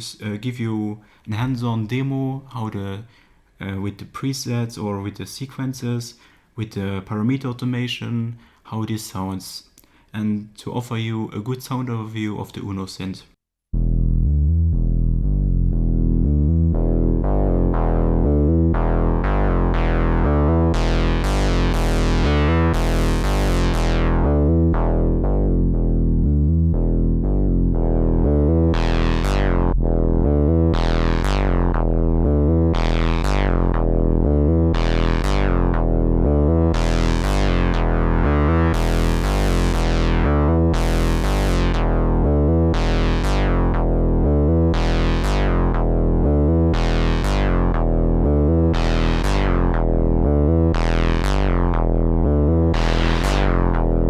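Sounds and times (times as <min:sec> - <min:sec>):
synthesizer bass sequence: 0:13.7 - 0:54.0.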